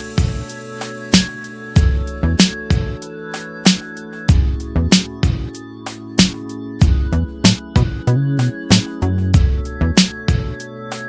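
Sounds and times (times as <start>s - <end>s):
steady drum beat: 0.0s - 0.5s, 1.2s - 3.0s, 6.2s - 8.1s
instrumental music with sustained notes: 0.0s - 11.0s.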